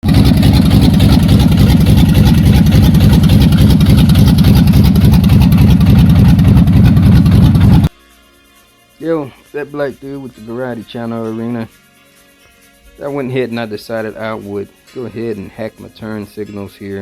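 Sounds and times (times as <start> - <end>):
v eight engine idling: 0.0 - 7.9.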